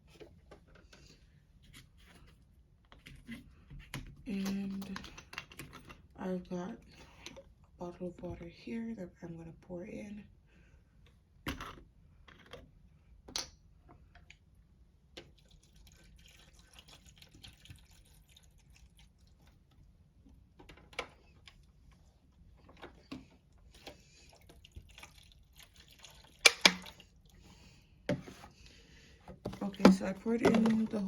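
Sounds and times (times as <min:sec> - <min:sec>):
water trickling and dripping: 0:15.3 - 0:19.5, 0:24.3 - 0:27.4
handling clicks and knocks: 0:29.4 - 0:31.0.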